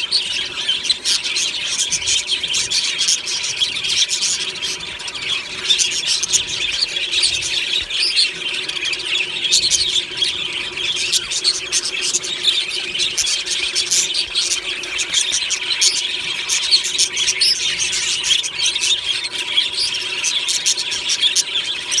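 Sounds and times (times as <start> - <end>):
budgerigars chattering and chirping: 0.0 - 22.0.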